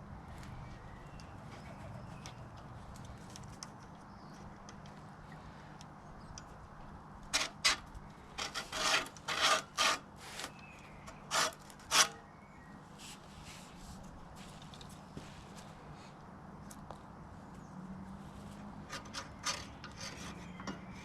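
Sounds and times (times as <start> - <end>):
short rasping scrapes: 8.4 - 12.2.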